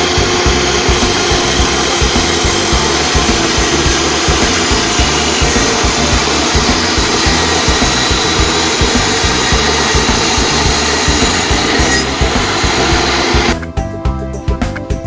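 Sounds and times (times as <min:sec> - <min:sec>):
power tool grinding: 0:00.0 - 0:13.6
background music: 0:00.0 - 0:15.0.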